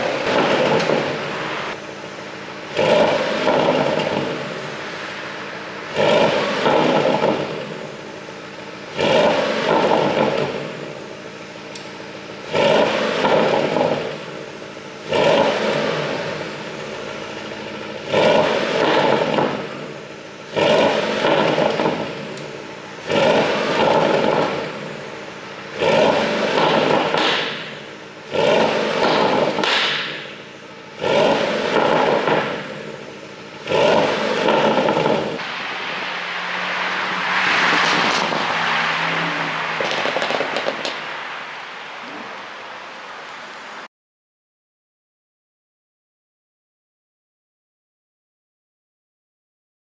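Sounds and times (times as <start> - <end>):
exhaust burbles and pops: 0.0 - 11.0, 11.7 - 33.0, 37.4 - 41.4
car engine revving: 0.0 - 43.9.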